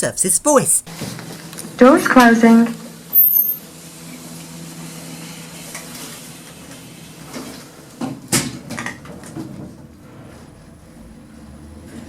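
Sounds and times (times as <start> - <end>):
lift sliding doors closing: 3.6 - 12.0.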